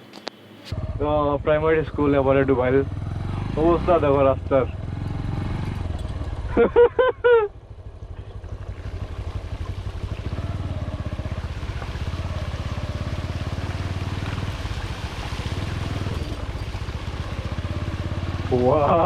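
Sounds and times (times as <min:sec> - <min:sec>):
motorcycle engine pulsing: 0:00.1 - 0:19.0
water washing under wheels: 0:07.7 - 0:19.0.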